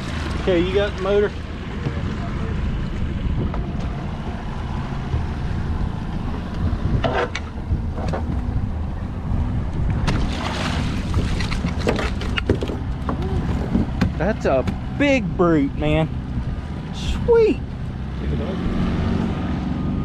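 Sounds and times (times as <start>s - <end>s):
knocks and clatters on boat: 0.0s - 8.8s, 9.7s - 15.2s
outboard motor running: 0.0s - 20.0s.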